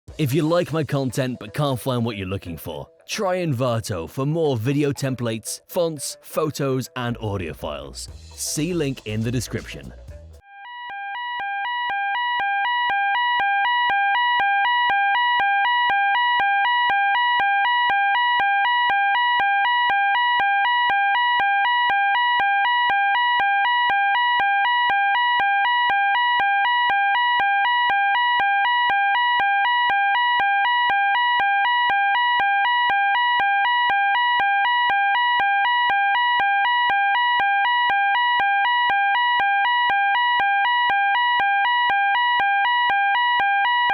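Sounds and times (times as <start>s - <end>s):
fire alarm two-tone warble: 10.4s - 43.9s.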